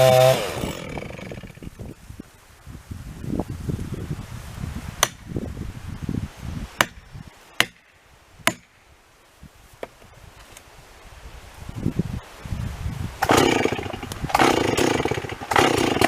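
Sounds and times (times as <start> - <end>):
low chainsaw rumble: 0.0 - 2.0, 13.2 - 16.0.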